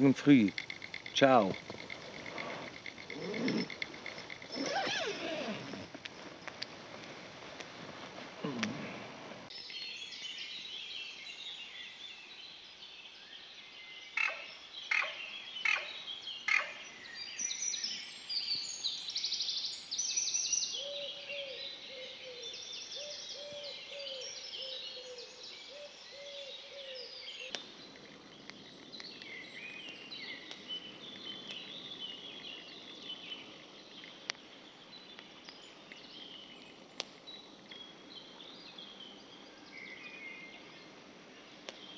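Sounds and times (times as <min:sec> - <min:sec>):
loud bird calls: 0:00.0 - 0:05.9
birds chirping and trilling: 0:00.0 - 0:06.0, 0:13.4 - 0:41.9
low cooing: 0:01.6 - 0:06.0, 0:08.4 - 0:09.2.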